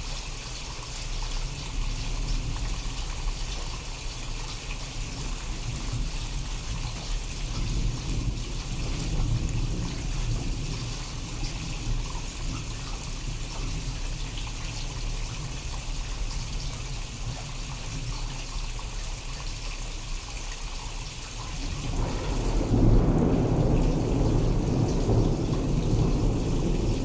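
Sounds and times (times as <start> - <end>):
steady rain falling: 0.0 - 27.0
low thunder rumble: 1.4 - 17.9, 21.4 - 27.0.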